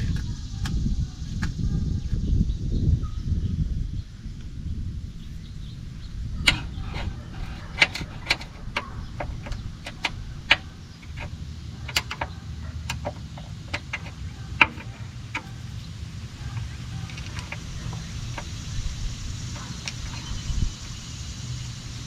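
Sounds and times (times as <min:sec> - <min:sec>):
steady low rumble: 0:00.0 - 0:22.0
metallic clicks and taps: 0:06.5 - 0:15.9.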